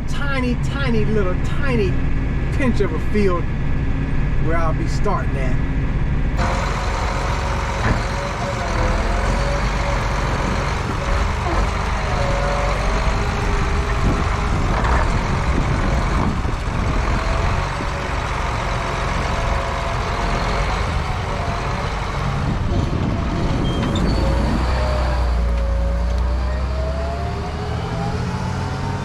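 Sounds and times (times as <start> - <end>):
tractor engine running: 5.4 - 26.4
thin wavering squeal: 23.5 - 27.0.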